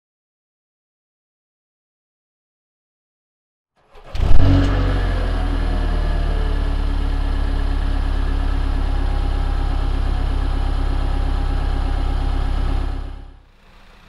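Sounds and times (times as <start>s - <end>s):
car engine idling: 4.1s - 14.0s.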